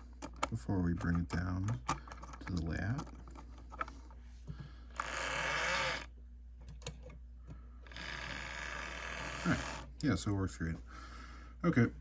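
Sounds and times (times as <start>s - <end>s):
model train motor whirring: 5.0s - 6.1s, 7.8s - 9.9s.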